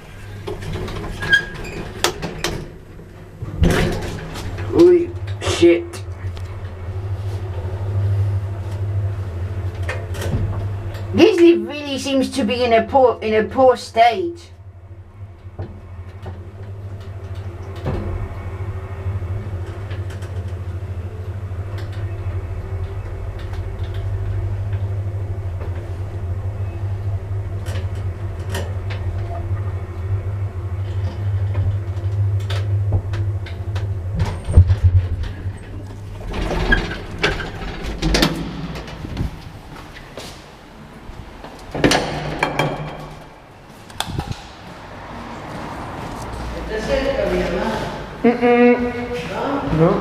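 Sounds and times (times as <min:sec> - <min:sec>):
lift door clatter: 0:00.0 - 0:05.5, 0:30.9 - 0:44.7
lift motor hum: 0:00.0 - 0:13.0, 0:14.6 - 0:50.0
lift car clicks and knocks: 0:32.4 - 0:39.5, 0:41.4 - 0:44.6.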